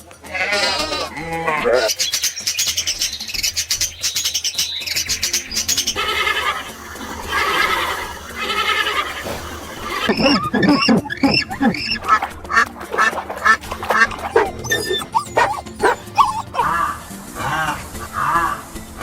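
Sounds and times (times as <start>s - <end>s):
ducks quacking: 5.1s - 18.7s.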